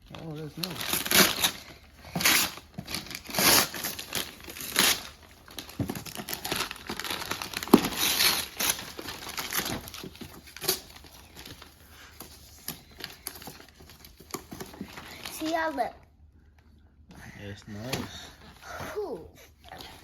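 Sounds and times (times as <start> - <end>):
wrapping paper crinkling and tearing: 0.0 - 15.8.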